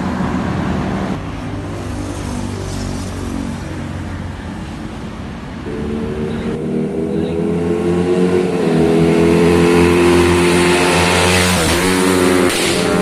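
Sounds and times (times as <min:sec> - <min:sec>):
motorcycle engine accelerating: 0:05.6 - 0:13.0.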